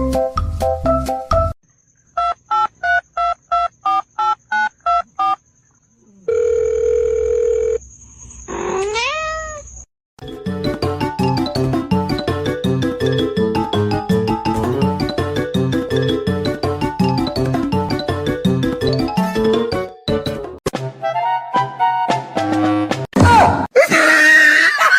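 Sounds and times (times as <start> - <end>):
background music: 0.0 - 1.5, 10.2 - 23.0.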